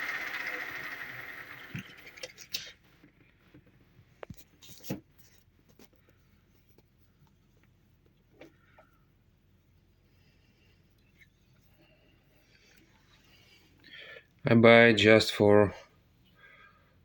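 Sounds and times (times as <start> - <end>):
lathe winding down: 0.0 - 2.6.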